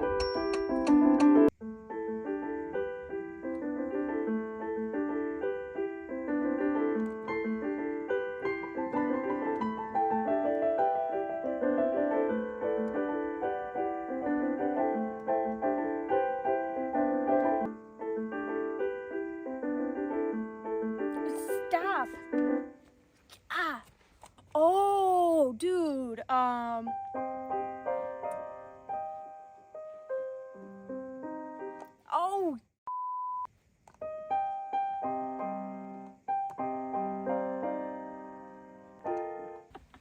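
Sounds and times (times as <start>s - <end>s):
digital keyboard piano melody: 0.0s - 22.9s, 26.7s - 32.0s, 34.0s - 39.7s.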